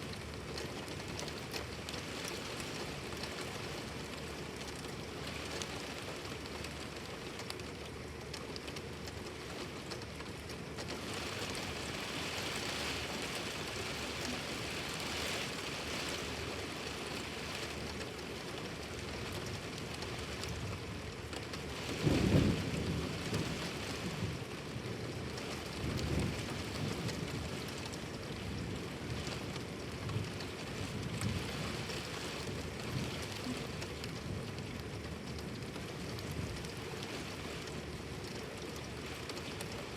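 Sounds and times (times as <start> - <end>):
heavy rain pouring: 0.0 - 39.9
thunder rolling: 21.9 - 24.4.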